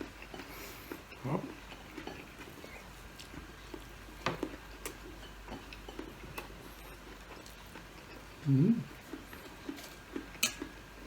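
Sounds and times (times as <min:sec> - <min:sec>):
person humming rising mm: 0:08.4 - 0:08.9.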